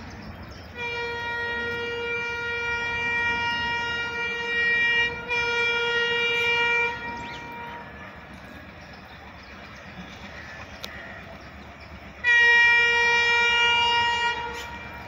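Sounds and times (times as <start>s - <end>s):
locomotive horn blasts: 0.7s - 8.4s, 12.2s - 15.0s.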